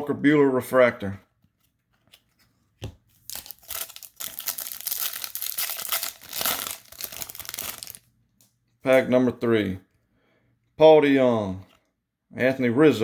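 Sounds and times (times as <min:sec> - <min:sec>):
wrapper tearing and crinkling: 0:03.1 - 0:08.1.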